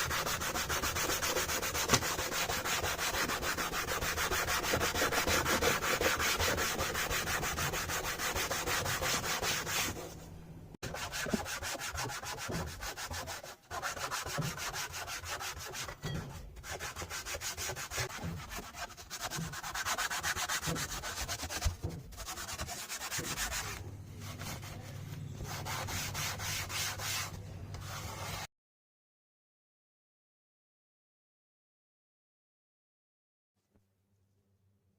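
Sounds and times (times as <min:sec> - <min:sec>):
scrubbing hard surface: 0:10.8 - 0:28.5.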